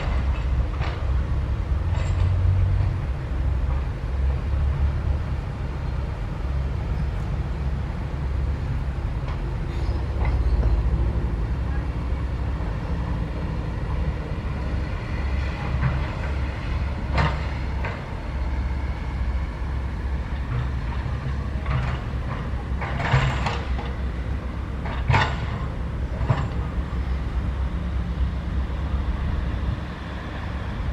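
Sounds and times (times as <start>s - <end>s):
excavator diesel engine running: 0.0s - 30.9s
metallic clanks and scrapes: 21.6s - 24.0s.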